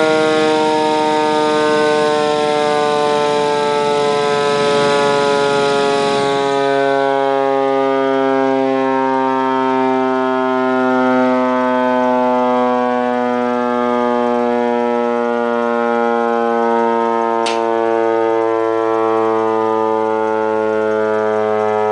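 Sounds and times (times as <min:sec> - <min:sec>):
mechanical siren winding down: 0:00.0 - 0:21.9
sharp click: 0:17.4 - 0:17.7.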